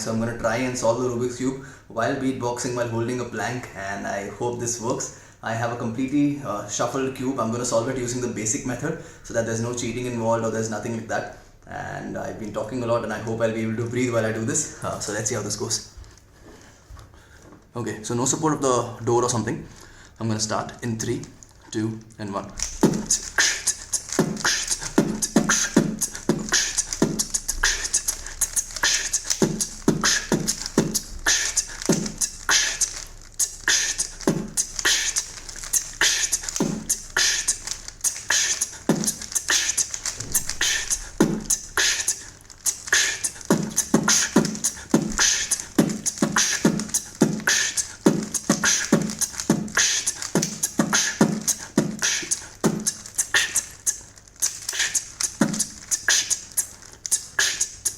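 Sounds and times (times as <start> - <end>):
person beatboxing: 22.5 - 57.9.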